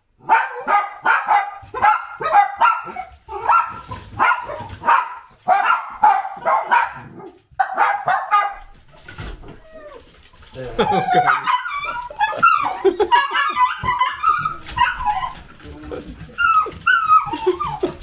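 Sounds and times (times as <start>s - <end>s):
small dog barking: 0.2s - 8.7s, 10.9s - 15.4s.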